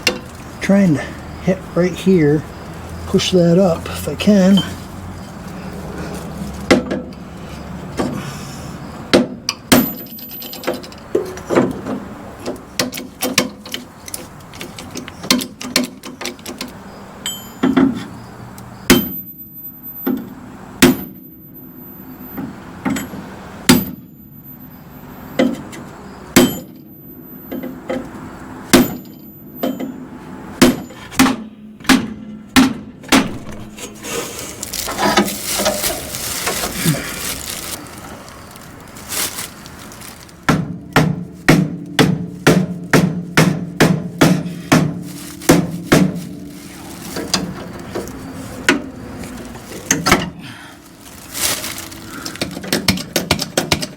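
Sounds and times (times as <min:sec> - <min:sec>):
hammer striking steel: 0:26.4 - 0:26.9.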